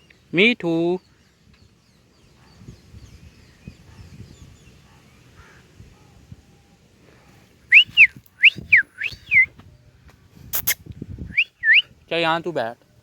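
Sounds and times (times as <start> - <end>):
short clear whistles: 7.7 - 9.6, 10.5 - 11.9.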